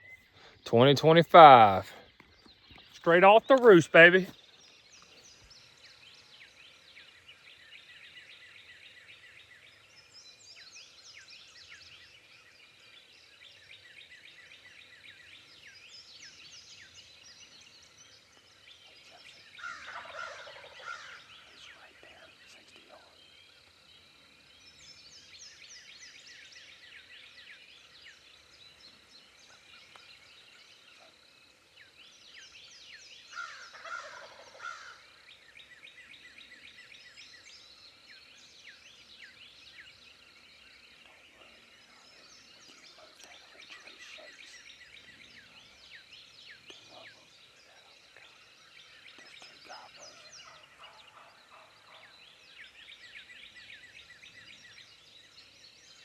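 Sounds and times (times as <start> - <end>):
songbirds singing: 0.0 - 56.0
turkey gobbling: 19.8 - 21.2, 33.7 - 35.0.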